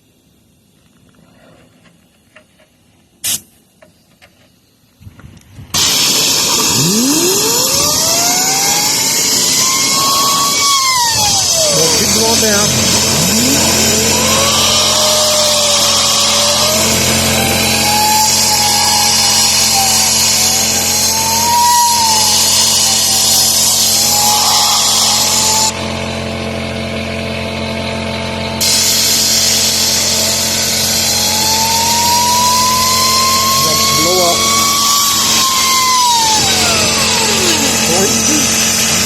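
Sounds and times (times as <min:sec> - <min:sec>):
compressed air hissing: 0:03.2 - 0:03.6, 0:05.7 - 0:25.7, 0:28.6 - 0:39.0
wavering whine: 0:05.8 - 0:39.0.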